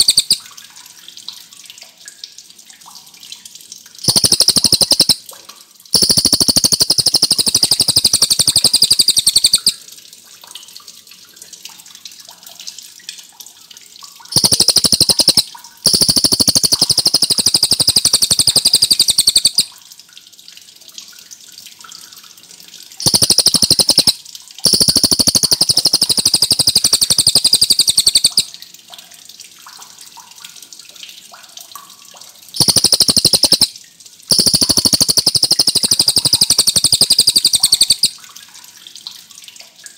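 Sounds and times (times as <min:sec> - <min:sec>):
bird singing fast trills: 0:06.0 - 0:09.8, 0:23.0 - 0:28.5, 0:34.3 - 0:38.1.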